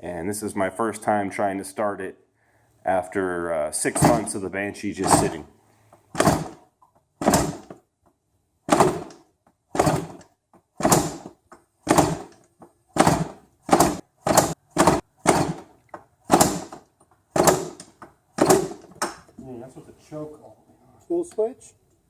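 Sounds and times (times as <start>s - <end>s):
engine turning over without firing: 11.9s - 12.4s.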